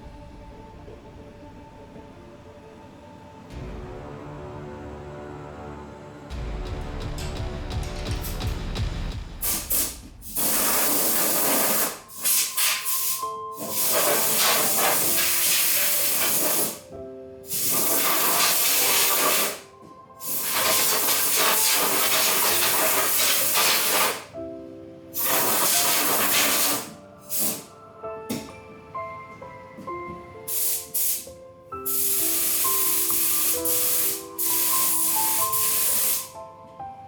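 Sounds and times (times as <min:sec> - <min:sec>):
background music: 0:00.0 - 0:37.0
spray paint hissing: 0:09.4 - 0:16.8, 0:17.5 - 0:19.6, 0:20.2 - 0:24.3, 0:25.2 - 0:27.7, 0:30.5 - 0:36.4.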